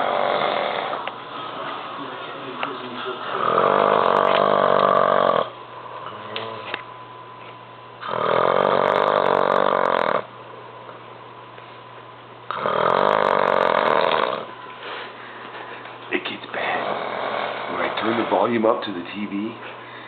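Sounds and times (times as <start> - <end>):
man snoring loudly: 0.0 - 1.0, 3.3 - 5.5, 8.0 - 10.3, 12.5 - 14.5, 16.6 - 18.4.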